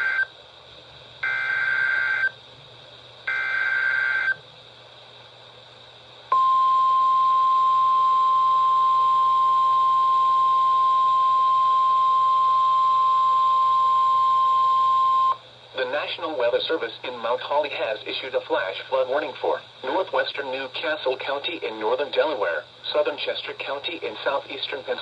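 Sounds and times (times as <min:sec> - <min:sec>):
steady warning alarm tone: 0:00.0 - 0:00.3, 0:01.2 - 0:02.4, 0:03.3 - 0:04.4, 0:06.3 - 0:15.4
radio hiss: 0:15.7 - 0:25.0.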